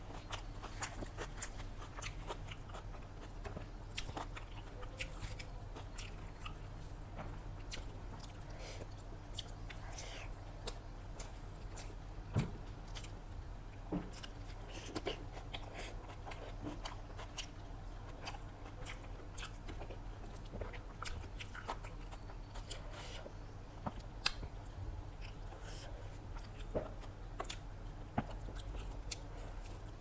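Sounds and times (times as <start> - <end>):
person chewing food: 0.0 - 12.0, 12.8 - 13.2, 14.0 - 30.0
steady low hum: 0.0 - 30.0.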